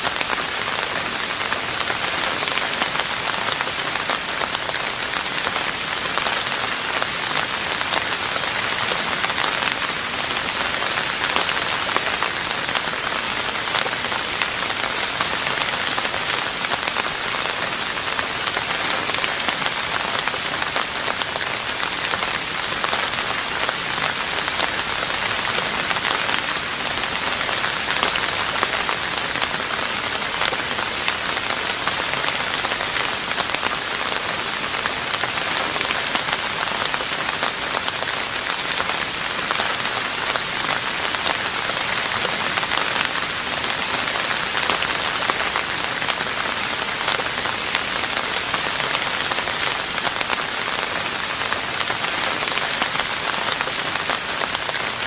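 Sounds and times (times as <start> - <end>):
rain on a roof: 0.0 - 55.0.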